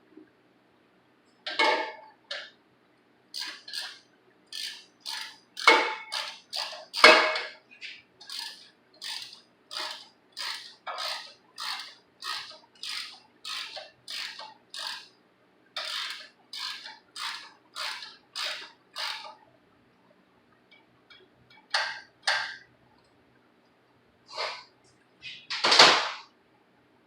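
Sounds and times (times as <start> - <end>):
mechanical clicking strokes: 3.4 - 7.5, 8.2 - 15.1, 15.8 - 19.4.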